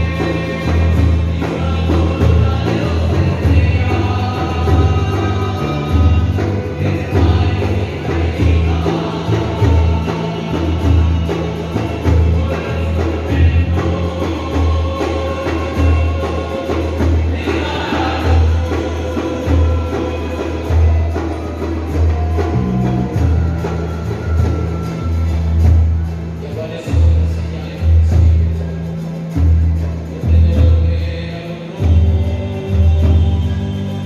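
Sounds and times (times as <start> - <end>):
person singing: 0.0 - 25.6.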